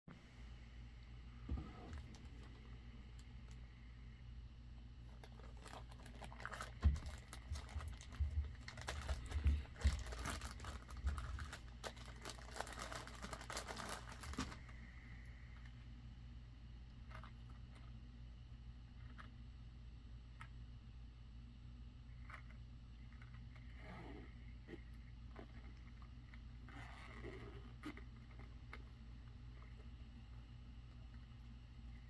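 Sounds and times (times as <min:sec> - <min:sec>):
faint low hum: 0:00.1 - 0:32.0
packaging clicking and crinkling: 0:05.1 - 0:14.7.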